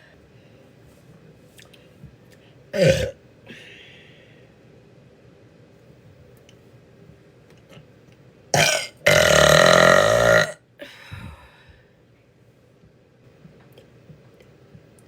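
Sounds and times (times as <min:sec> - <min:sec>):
woman burping: 0:02.8 - 0:03.2, 0:08.6 - 0:10.6.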